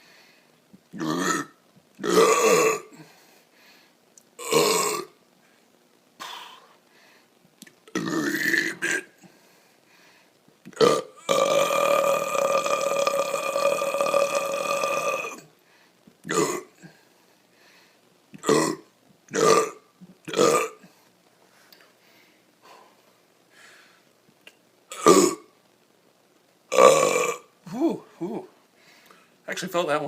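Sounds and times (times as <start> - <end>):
man burping: 0.9 - 3.1, 4.4 - 5.1, 7.9 - 9.2, 10.7 - 15.5, 16.2 - 17.0, 18.4 - 20.9, 24.9 - 25.5, 26.7 - 28.5.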